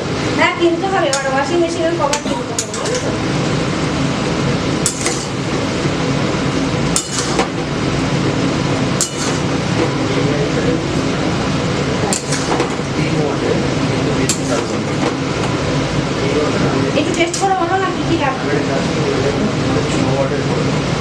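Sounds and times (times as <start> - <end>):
metal utensils clinking on cookware: 2.4 - 3.0.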